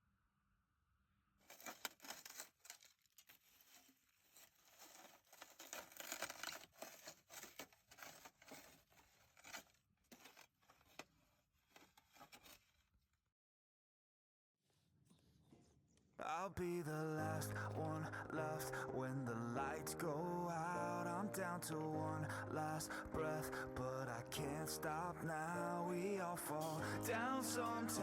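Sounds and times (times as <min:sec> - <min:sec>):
packaging crinkling and tearing: 0:01.4 - 0:11.0.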